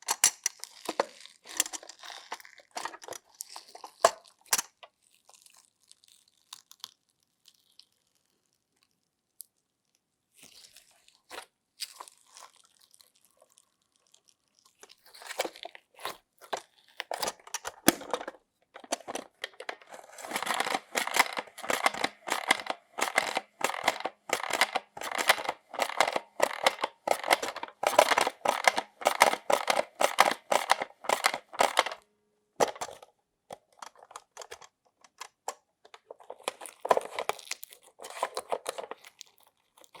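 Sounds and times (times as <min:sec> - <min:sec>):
slime crackling and popping: 0:04.9 - 0:09.0.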